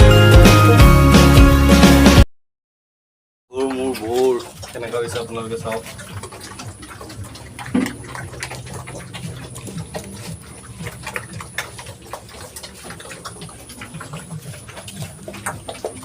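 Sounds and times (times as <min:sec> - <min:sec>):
pigs chewing and smacking: 0:03.5 - 0:16.0
pigs grunting: 0:03.5 - 0:16.0.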